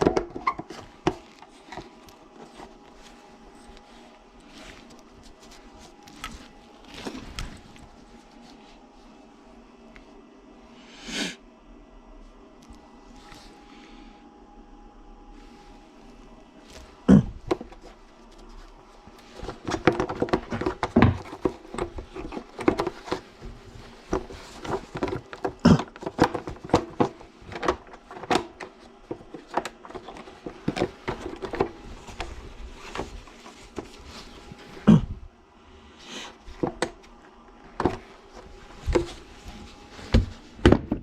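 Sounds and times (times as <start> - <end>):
hard objects knocking and clicking: 0.0 - 1.9, 17.1 - 17.9, 19.3 - 33.9.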